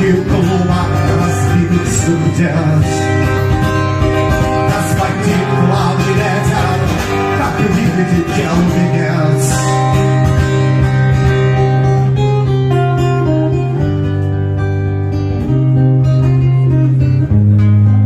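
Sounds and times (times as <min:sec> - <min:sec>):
acoustic guitar strumming: 0:00.0 - 0:18.0.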